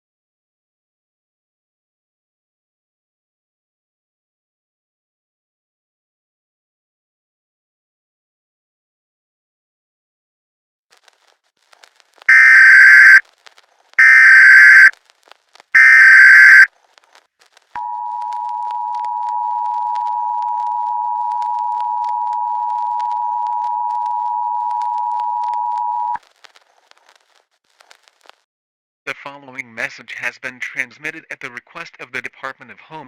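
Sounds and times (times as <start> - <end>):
data tone bursts: 12.3 - 13.2, 14.0 - 14.9, 15.8 - 16.7
two-tone attention signal: 12.3 - 13.2, 14.0 - 14.9, 15.8 - 16.7.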